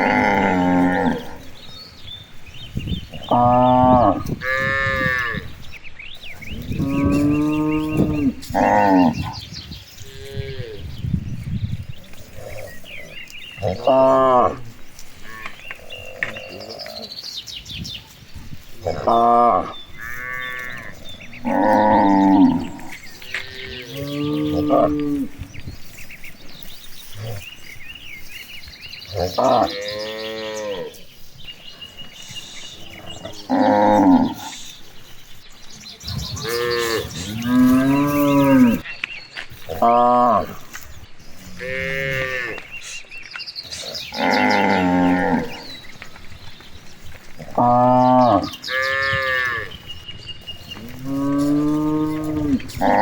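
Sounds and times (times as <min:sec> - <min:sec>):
cattle mooing: 0:00.0 - 0:01.5, 0:06.6 - 0:09.3, 0:13.6 - 0:17.1, 0:18.8 - 0:25.4, 0:29.1 - 0:31.0, 0:36.3 - 0:38.9, 0:41.4 - 0:42.7, 0:44.1 - 0:45.7, 0:50.8 - 0:53.0.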